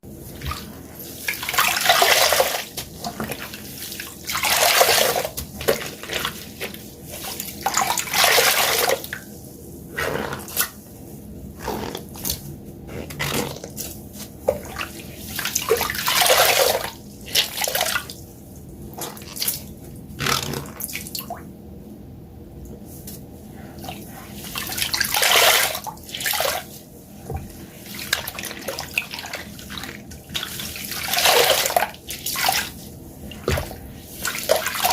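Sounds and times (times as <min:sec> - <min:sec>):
wet sponges squeezed: 0:00.2 - 0:10.8, 0:11.5 - 0:18.2, 0:18.9 - 0:21.1, 0:23.1 - 0:34.9
water gushing and splashing: 0:00.3 - 0:09.2, 0:27.8 - 0:34.9.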